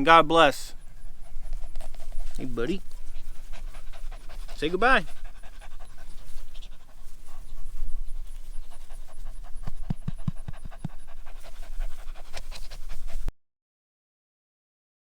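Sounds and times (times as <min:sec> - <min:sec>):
puppy panting: 0:00.0 - 0:13.3.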